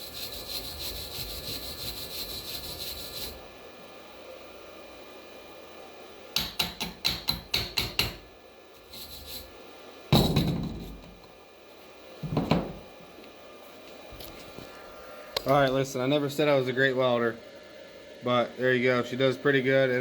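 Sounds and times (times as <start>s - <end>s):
chipping hammer tapping metal: 6.4s - 8.2s.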